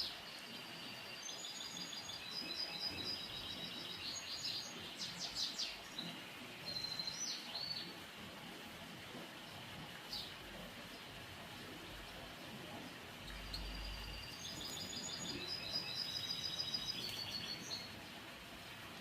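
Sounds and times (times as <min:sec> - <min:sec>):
goldfinch twittering: 0:00.0 - 0:08.0, 0:12.9 - 0:18.0
background hiss: 0:00.0 - 0:19.0.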